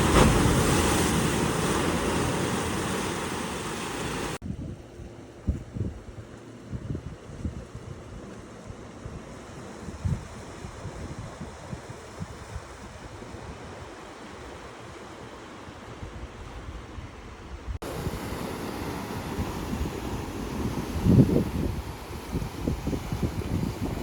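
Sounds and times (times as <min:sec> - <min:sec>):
ocean surf rushing: 0:00.0 - 0:04.4, 0:17.8 - 0:24.0
wind rumbling on microphone: 0:00.0 - 0:14.6, 0:15.7 - 0:24.0.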